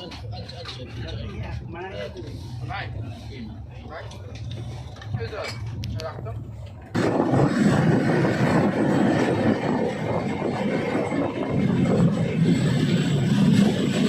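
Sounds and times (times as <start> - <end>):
train rumbling: 0.0 - 14.0.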